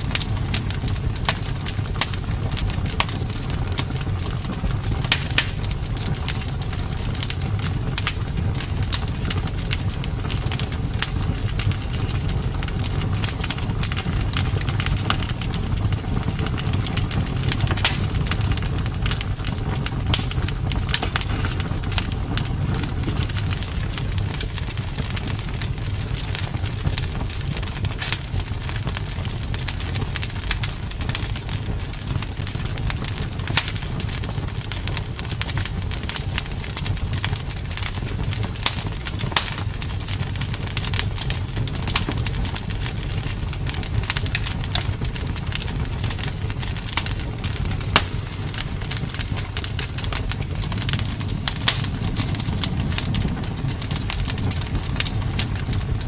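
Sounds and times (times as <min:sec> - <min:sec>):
wood fire crackling: 0:00.0 - 0:56.0
low rumble: 0:47.3 - 0:56.0.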